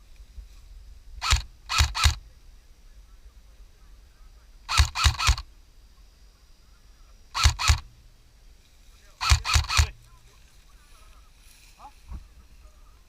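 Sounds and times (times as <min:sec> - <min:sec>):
airsoft gun shots: 0:01.2 - 0:02.2, 0:04.7 - 0:05.4, 0:07.4 - 0:07.9, 0:09.2 - 0:10.0.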